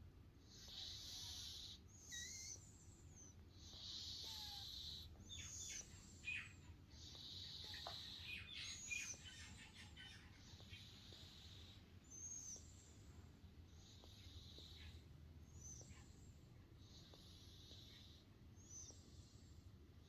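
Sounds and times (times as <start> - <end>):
cat snoring faintly: 0.5 - 19.7
squeaky nose whistles: 1.1 - 2.6.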